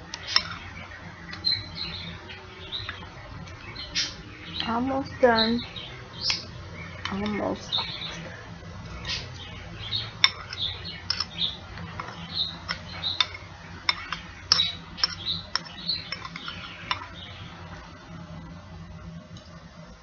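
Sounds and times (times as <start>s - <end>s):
utensil scraping a plate: 0.2s - 0.8s, 10.0s - 17.2s.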